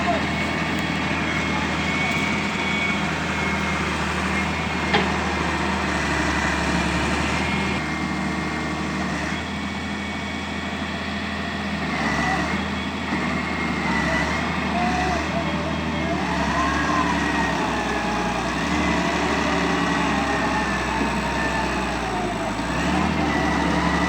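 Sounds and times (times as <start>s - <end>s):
diesel engine running: 0.0s - 24.0s.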